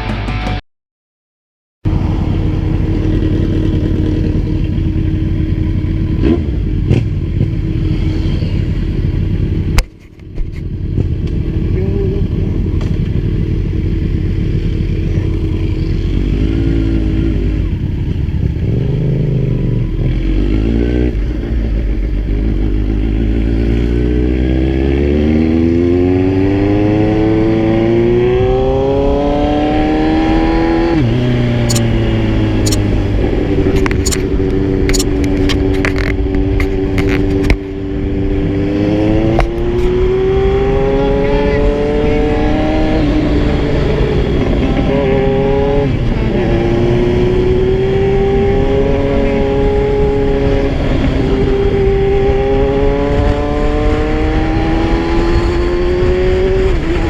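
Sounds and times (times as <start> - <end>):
motorcycle engine accelerating: 1.9 - 57.0.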